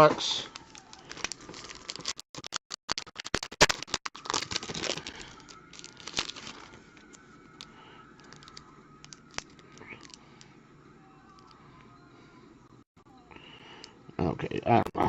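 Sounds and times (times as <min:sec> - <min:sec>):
foil wrappers crinkling and tearing: 0:00.5 - 0:10.2.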